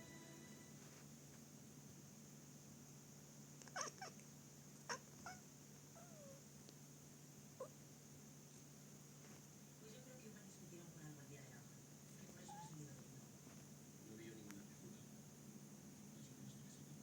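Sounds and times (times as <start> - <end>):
cat meowing: 3.6 - 4.2, 4.9 - 5.4, 6.0 - 6.4.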